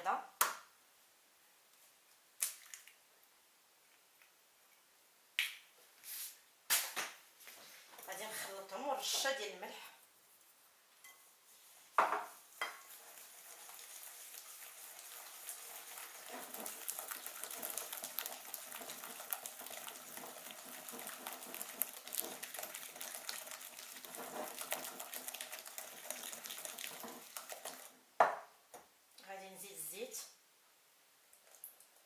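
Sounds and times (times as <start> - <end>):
utensil beating in a bowl: 12.0 - 28.4.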